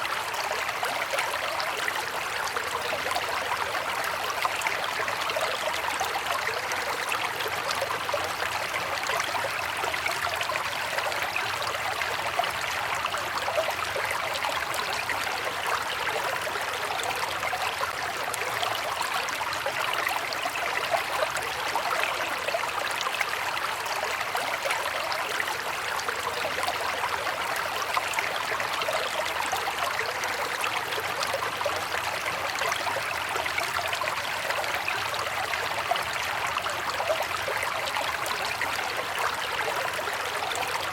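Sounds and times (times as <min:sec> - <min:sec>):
river water flowing over stones: 0:00.0 - 0:40.9.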